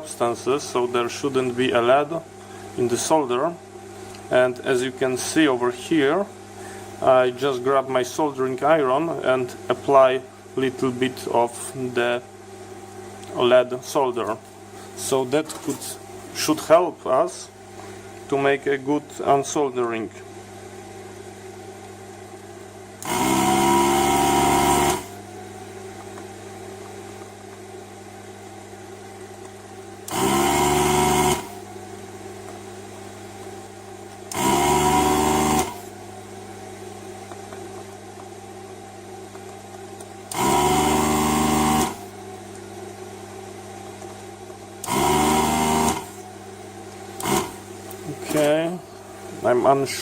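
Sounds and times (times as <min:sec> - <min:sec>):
electric vacuum pump running: 0:00.0 - 0:50.0
steady low hum: 0:00.0 - 0:50.0.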